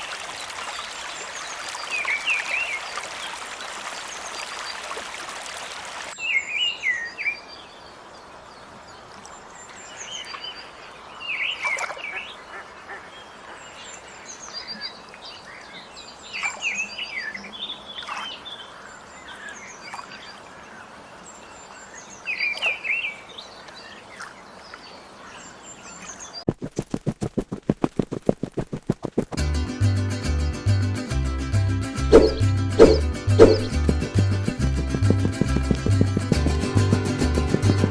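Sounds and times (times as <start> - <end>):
birds chirping: 32.1 - 37.9.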